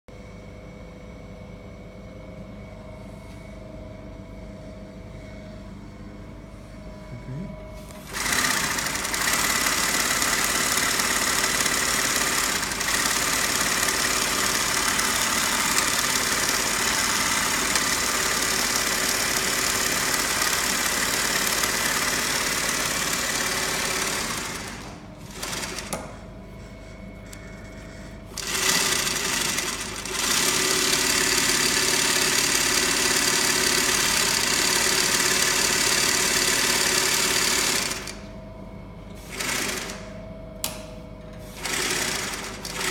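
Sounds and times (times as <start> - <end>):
sewing machine running: 8.0 - 26.3, 27.2 - 38.3, 39.2 - 40.1, 41.5 - 42.9.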